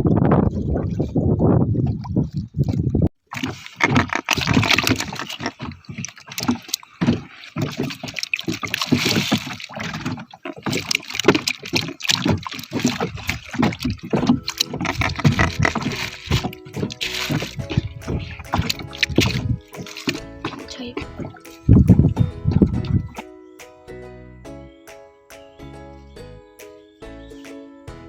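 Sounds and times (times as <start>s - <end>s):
water slapping boat hull: 0.0s - 23.3s
boat knocks: 3.4s - 23.3s
music: 14.2s - 28.0s.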